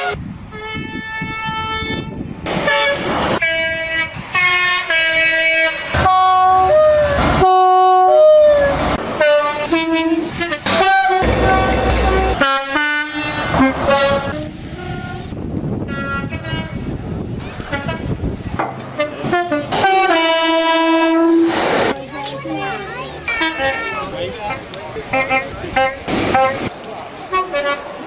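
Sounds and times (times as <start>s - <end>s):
train air horn blasts: 0.0s - 16.9s, 18.9s - 21.6s
low rumble of train: 0.0s - 28.0s.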